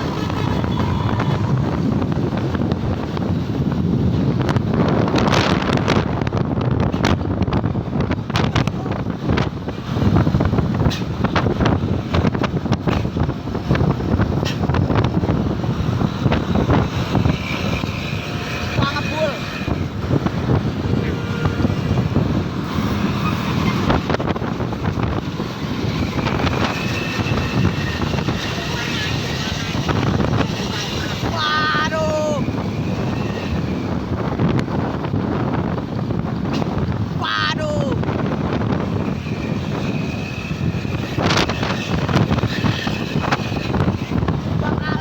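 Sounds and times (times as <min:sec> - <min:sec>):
vehicle and road noise: 0:00.0 - 0:45.0
wind buffeting microphone: 0:00.0 - 0:45.0.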